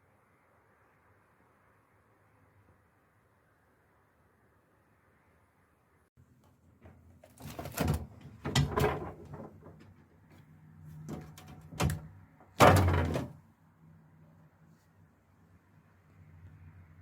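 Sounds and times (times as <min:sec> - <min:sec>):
knocks and thuds of containers: 0:06.8 - 0:10.0, 0:11.0 - 0:13.4.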